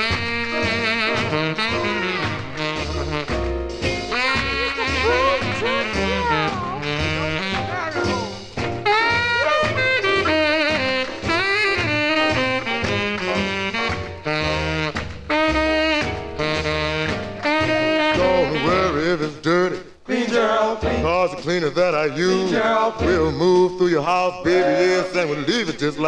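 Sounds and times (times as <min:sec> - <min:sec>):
steady bass line: 0:00.0 - 0:19.0
saxophone solo: 0:00.0 - 0:19.1
rhythm and blues band: 0:00.0 - 0:26.0.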